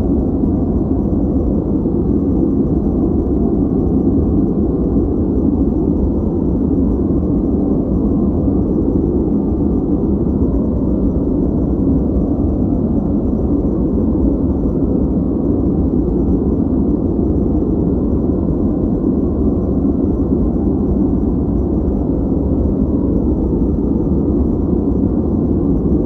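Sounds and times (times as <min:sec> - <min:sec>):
low filtered white noise: 0:00.0 - 0:26.0.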